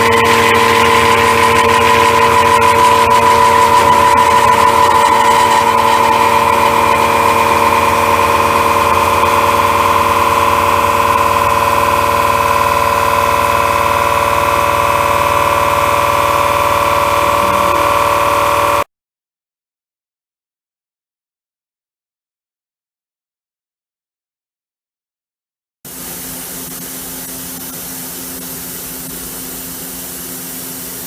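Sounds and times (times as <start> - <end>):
face mill cutting steel: 0.0 - 18.9.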